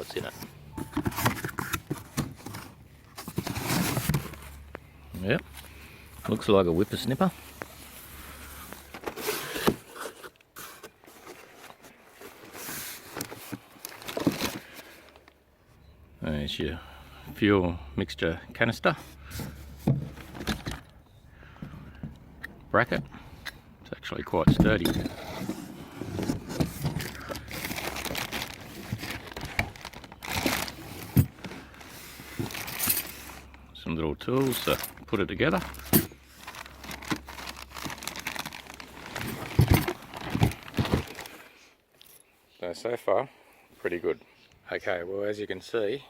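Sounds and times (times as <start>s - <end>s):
packaging rustling and scraping: 0.0s - 15.3s, 19.0s - 20.9s, 24.6s - 33.6s, 34.4s - 41.6s.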